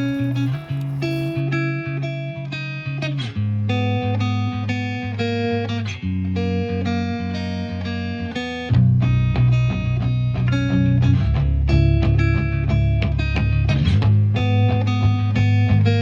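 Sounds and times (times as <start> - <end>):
plucked guitar: 0.0 - 16.0.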